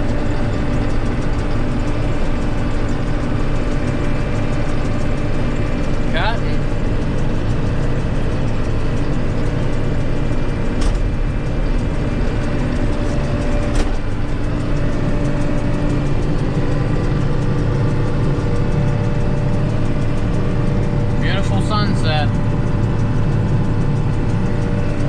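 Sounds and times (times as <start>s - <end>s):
combine harvester drone: 0.0s - 25.0s.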